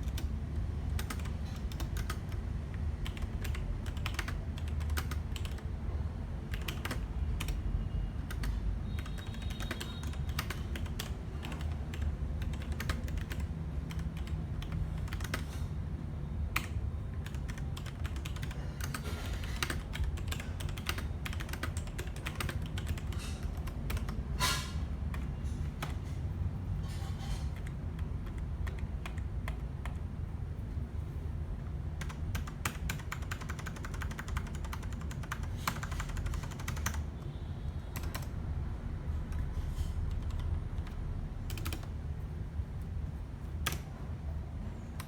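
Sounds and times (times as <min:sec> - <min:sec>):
mechanical keyboard clicks: 0:00.0 - 0:00.4, 0:01.0 - 0:05.7, 0:06.5 - 0:07.6, 0:08.3 - 0:15.5, 0:16.5 - 0:24.2, 0:32.0 - 0:37.1, 0:38.0 - 0:38.3, 0:40.1 - 0:42.0, 0:43.6 - 0:43.9.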